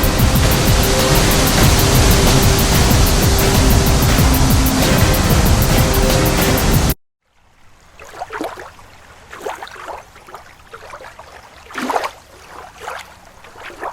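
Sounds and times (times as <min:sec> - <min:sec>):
loud dense noise: 0:00.0 - 0:07.0
water sloshing and splashing: 0:00.0 - 0:13.9.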